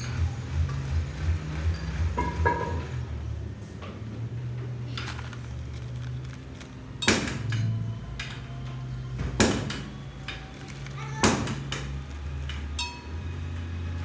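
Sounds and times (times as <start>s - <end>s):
metallic clanks of tools: 0.0s - 3.1s, 4.9s - 8.8s, 9.4s - 13.2s.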